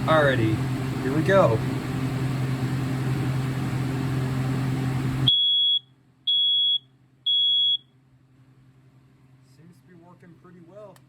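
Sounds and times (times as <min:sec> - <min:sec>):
steady hum: 0:00.0 - 0:11.0
smoke alarm beeps: 0:05.3 - 0:08.0.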